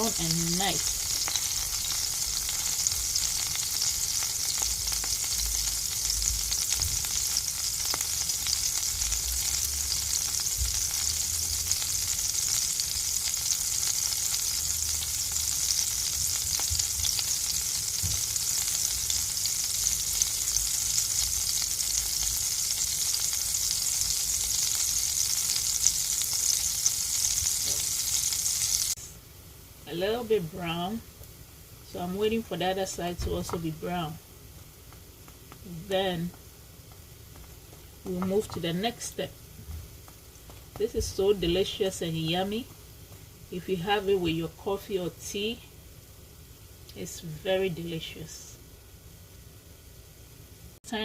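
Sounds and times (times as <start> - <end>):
bread sizzling in a frying pan: 0.0 - 29.0, 32.0 - 44.7.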